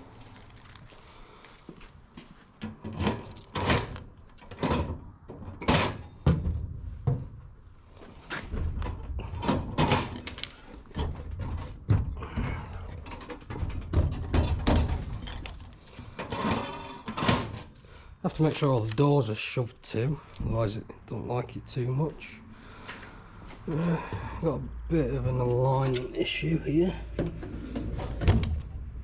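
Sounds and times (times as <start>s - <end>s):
steel drawers sliding and shutting: 2.6s - 6.8s, 8.3s - 17.8s, 27.1s - 28.8s.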